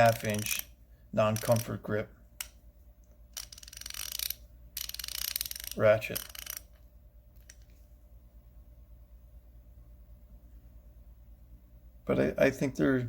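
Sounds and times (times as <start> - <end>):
ratchet clicking: 0.1 - 0.7, 1.4 - 1.7, 3.4 - 6.8.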